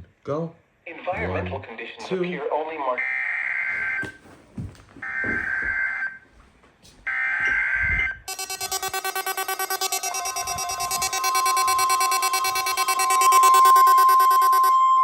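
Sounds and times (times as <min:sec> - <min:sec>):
buzzy digital data tones: 0:08.3 - 0:15.0
pulsing electronic alert tone: 0:08.3 - 0:15.0.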